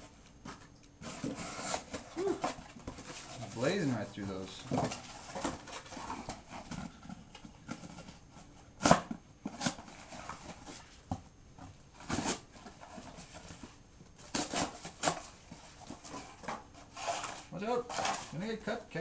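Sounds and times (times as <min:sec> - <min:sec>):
knife slicing cardboard: 0:01.0 - 0:02.5, 0:14.3 - 0:15.2.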